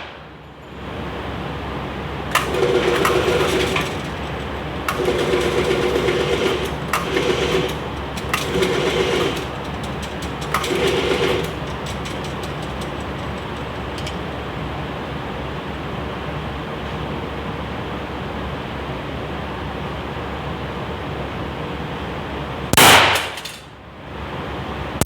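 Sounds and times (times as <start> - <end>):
motor click: 2.3 - 14.2.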